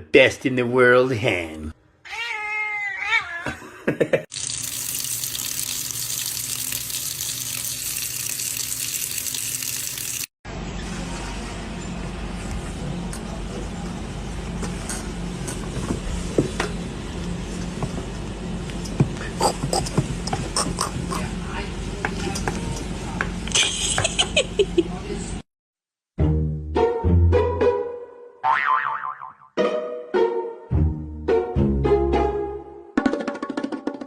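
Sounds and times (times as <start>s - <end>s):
water running from a tap: 4.3s - 10.3s.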